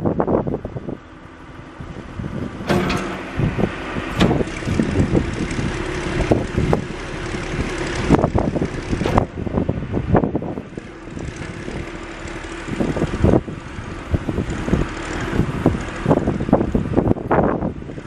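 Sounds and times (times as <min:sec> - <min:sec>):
diesel engine running: 0:00.0 - 0:18.0
sharp knocks and clunks: 0:02.6 - 0:05.6, 0:08.9 - 0:09.4.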